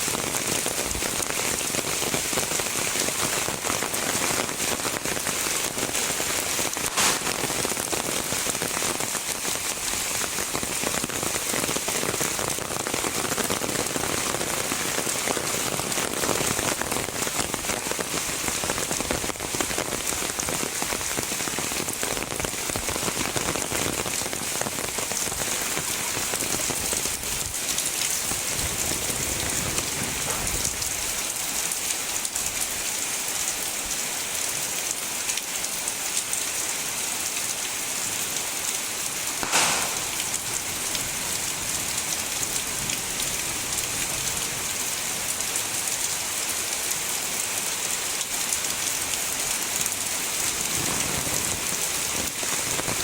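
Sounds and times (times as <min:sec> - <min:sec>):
heavy rain falling: 0:00.0 - 0:53.0.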